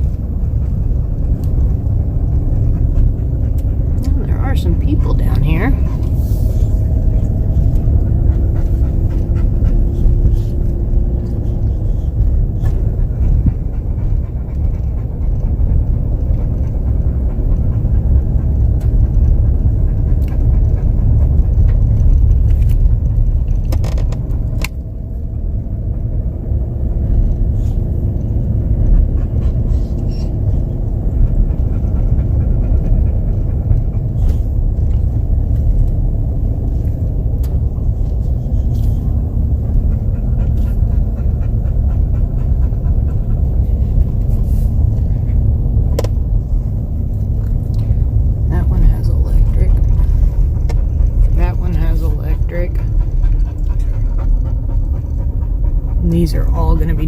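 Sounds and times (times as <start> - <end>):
car engine and road rumble: 0.0 - 57.0.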